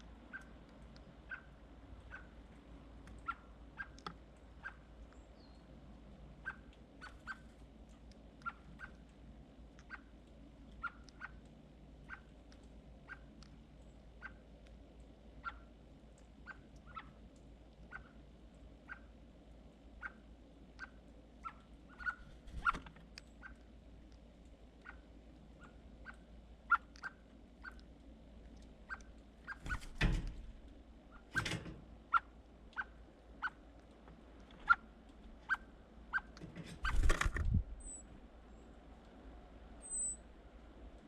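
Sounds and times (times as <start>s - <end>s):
bird ticks: 0.0s - 19.1s, 20.0s - 29.9s, 30.6s - 37.0s
wing thumps and flutters: 22.2s - 23.0s, 29.5s - 30.7s, 36.4s - 37.8s.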